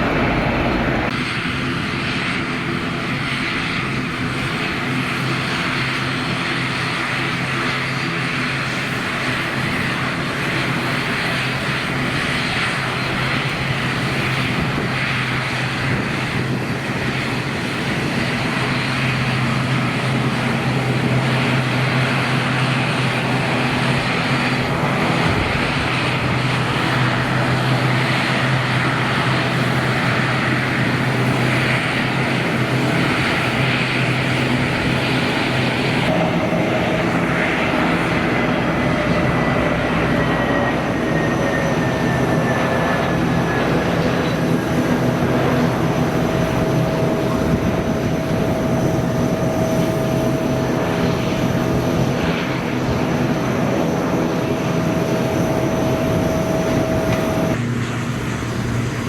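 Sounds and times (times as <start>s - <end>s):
airliner engines roaring: 0.0s - 59.0s.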